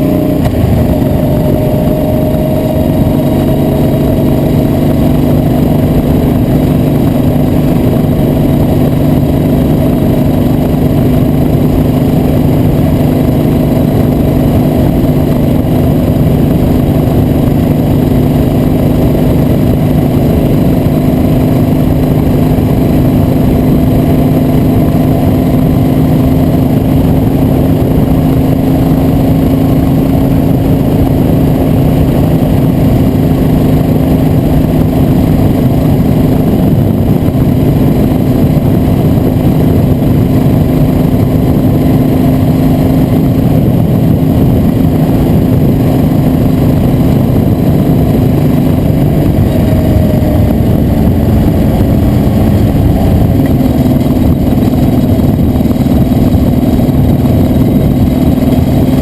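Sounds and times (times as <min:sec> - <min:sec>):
vehicle engine running: 0:00.0 - 0:59.0
wind rumble on microphone: 0:00.0 - 0:59.0.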